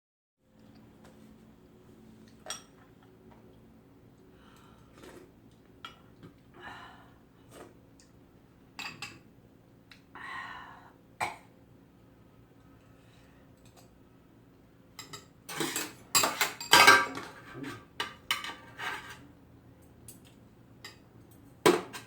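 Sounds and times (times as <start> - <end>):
faint steady hum: 0.4 - 22.0.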